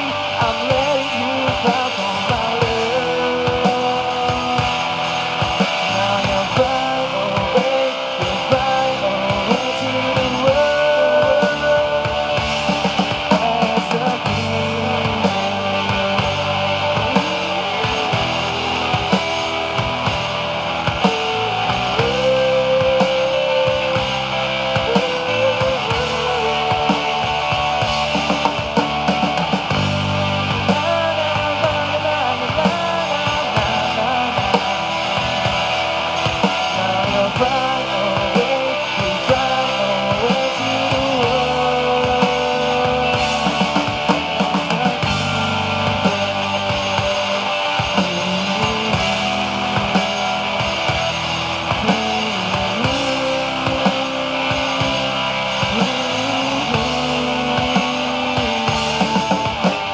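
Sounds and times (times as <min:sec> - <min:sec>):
drum kit beat: 0:00.0 - 0:59.9
electric guitar bending long notes: 0:00.0 - 0:59.9.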